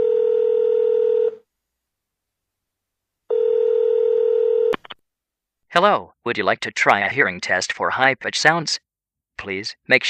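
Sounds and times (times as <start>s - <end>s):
telephone ringback tone: 0.0s - 1.4s, 3.3s - 4.8s.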